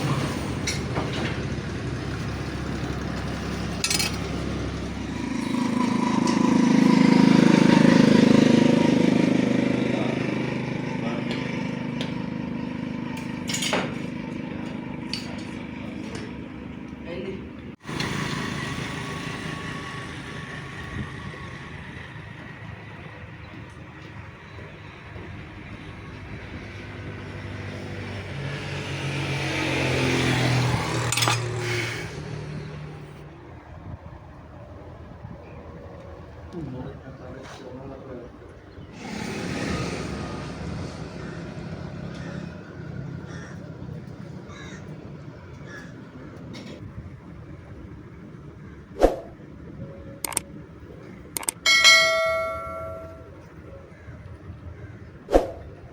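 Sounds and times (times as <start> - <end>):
vehicle passing by: 0.0 - 23.3, 24.9 - 33.6, 38.8 - 45.4
sharp metal clicks: 50.2 - 50.5, 51.3 - 53.2
sharp clink: 51.4 - 53.4
strike on ringing steel: 51.6 - 53.3.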